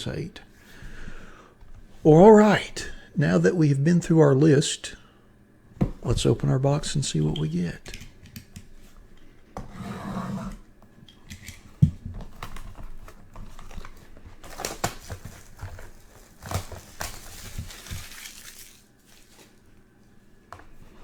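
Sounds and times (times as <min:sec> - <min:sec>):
plastic wrapping crinkling and tearing: 0:12.2 - 0:19.8.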